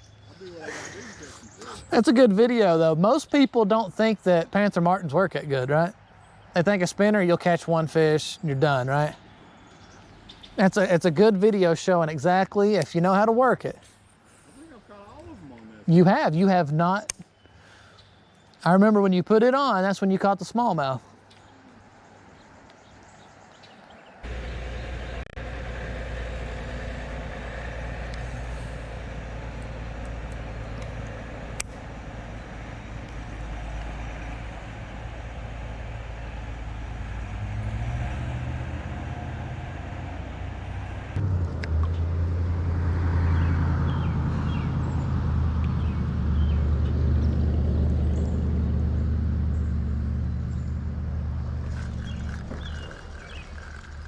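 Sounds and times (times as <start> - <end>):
low engine hum: 21.4 - 54.0.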